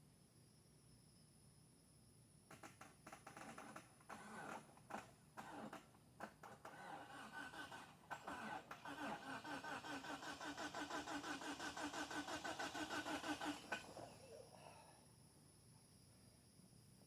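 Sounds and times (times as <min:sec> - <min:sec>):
starter motor cranking engine: 0:02.6 - 0:14.2.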